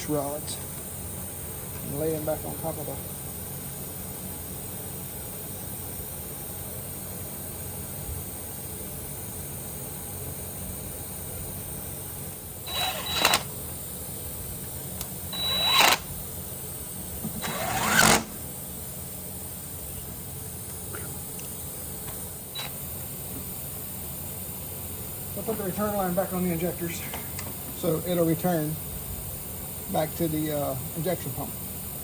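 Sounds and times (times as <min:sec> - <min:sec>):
hand tool bursts: 0:15.4 - 0:16.1, 0:17.2 - 0:18.4.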